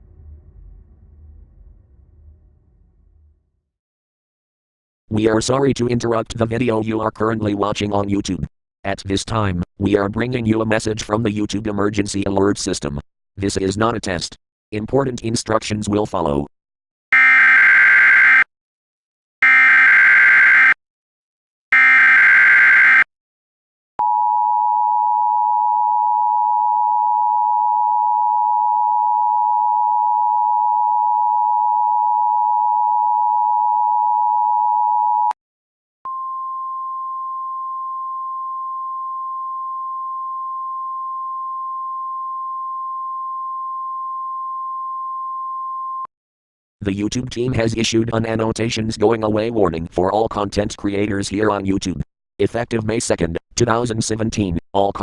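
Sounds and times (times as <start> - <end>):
single steady tone: 24.0 - 35.4, 36.1 - 46.1.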